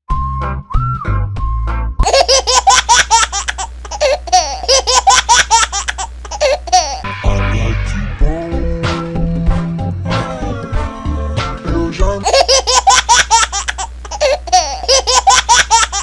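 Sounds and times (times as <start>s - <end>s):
music with steady bass: 0.1s - 2.1s, 7.0s - 12.3s
high-pitched cartoon laughter: 2.0s - 7.1s, 12.2s - 16.0s.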